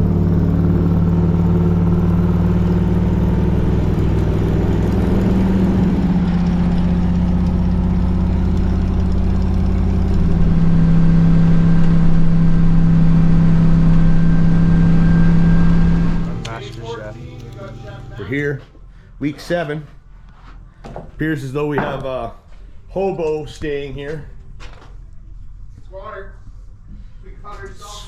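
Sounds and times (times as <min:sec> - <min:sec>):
vehicle engine running: 0:00.0 - 0:20.1.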